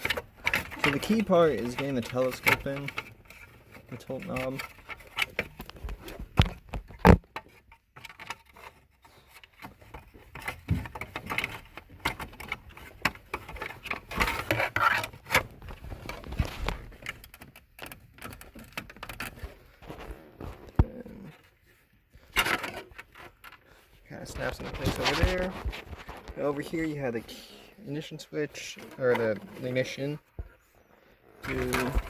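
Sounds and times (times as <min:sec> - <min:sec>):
plastic clicks and knocks: 0:00.0 - 0:08.7
plastic trim scraping: 0:00.0 - 0:32.0.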